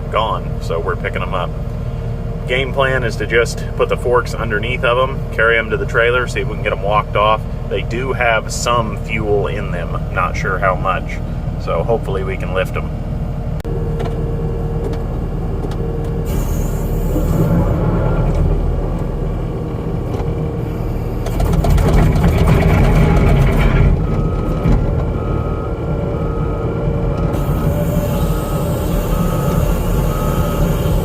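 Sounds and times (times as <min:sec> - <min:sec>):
skid steer engine running: 0:00.0 - 0:31.0
electronic beeper: 0:22.2 - 0:31.0.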